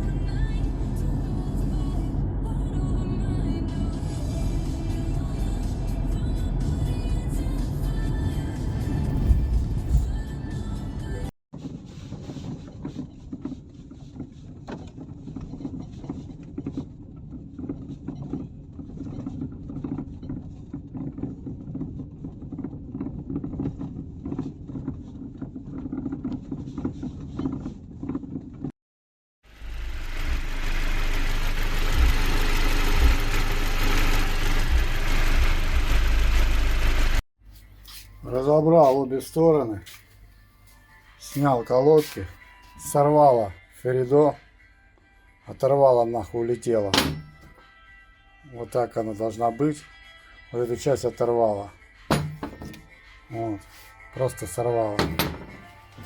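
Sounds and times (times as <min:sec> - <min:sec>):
car rushing noise: 0:29.5 - 0:37.2.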